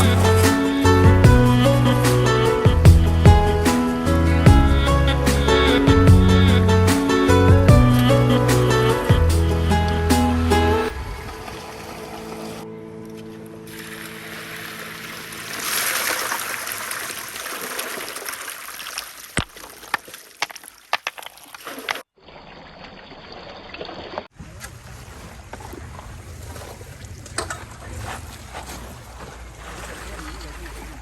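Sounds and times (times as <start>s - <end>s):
water running and trickling: 13.7s - 24.3s.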